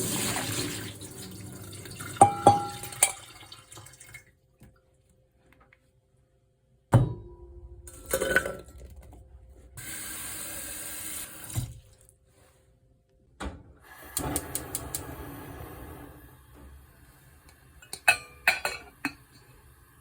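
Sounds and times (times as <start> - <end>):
kitchen tap running into sink: 0.0 - 4.3, 9.8 - 12.0, 13.9 - 20.0
dishes clinking: 2.2 - 3.4, 8.0 - 8.9, 17.8 - 19.2.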